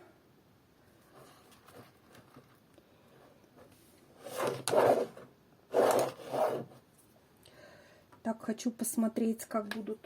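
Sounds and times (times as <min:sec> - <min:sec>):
rubbing and scraping of materials: 0:01.0 - 0:07.1.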